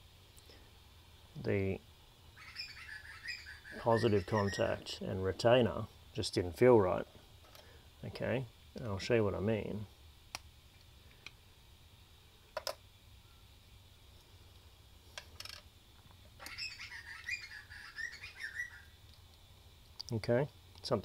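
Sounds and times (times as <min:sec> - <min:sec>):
bird chirping high notes: 0:02.4 - 0:04.8, 0:16.5 - 0:18.9.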